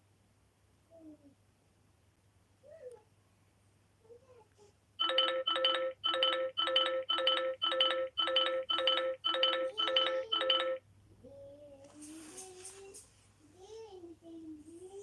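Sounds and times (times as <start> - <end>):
mobile phone ringtone: 5.0 - 10.8.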